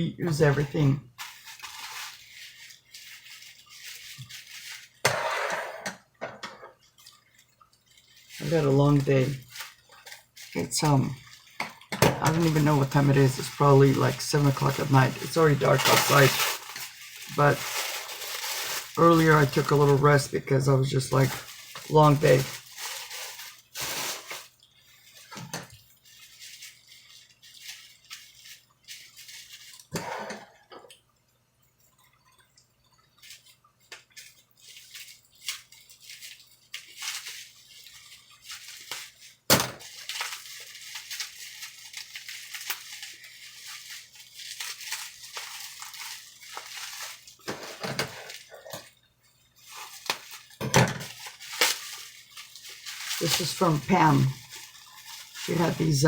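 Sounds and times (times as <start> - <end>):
plastic packaging crinkling: 0.2 - 5.1, 6.8 - 30.0, 32.9 - 56.0.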